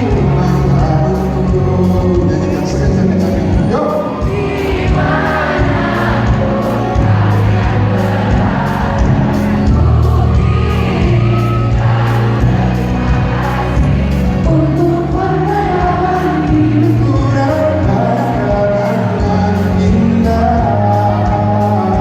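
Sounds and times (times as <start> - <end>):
live pop band playing: 0.0 - 22.0
person singing: 13.6 - 22.0.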